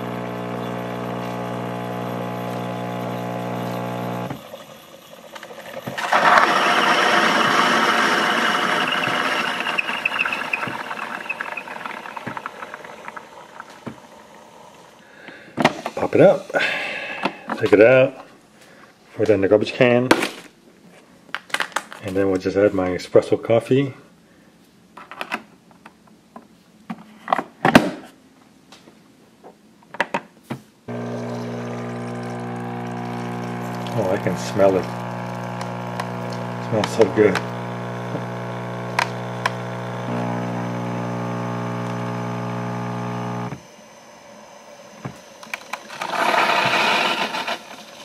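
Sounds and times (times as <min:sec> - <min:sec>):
coffee maker steam hissing: 0:00.0 - 0:17.7, 0:30.9 - 0:48.0.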